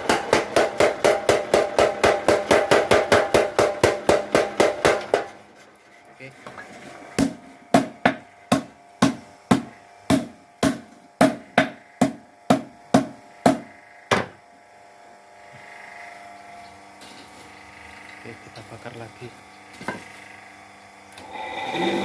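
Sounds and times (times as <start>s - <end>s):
hammer striking hot steel: 0.0s - 5.3s.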